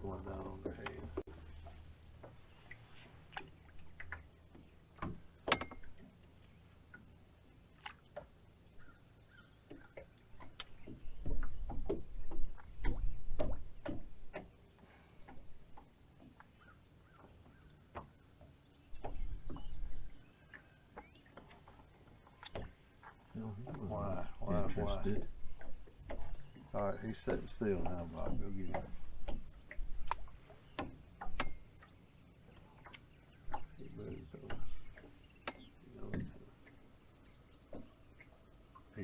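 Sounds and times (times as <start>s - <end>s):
sharp clicks and knocks: 27.2s - 31.6s, 34.4s - 36.8s.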